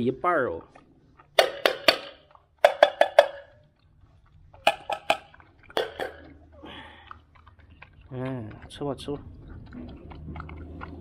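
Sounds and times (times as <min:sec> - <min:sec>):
can tapping against dish: 0:01.4 - 0:03.6, 0:04.6 - 0:06.3.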